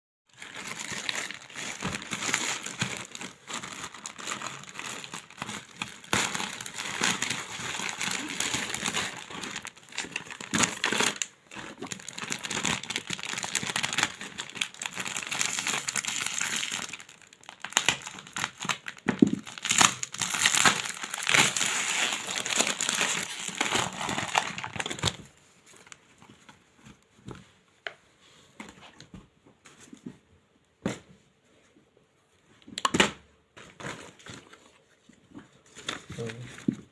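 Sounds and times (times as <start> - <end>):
packaging crinkling: 0.3 - 26.0.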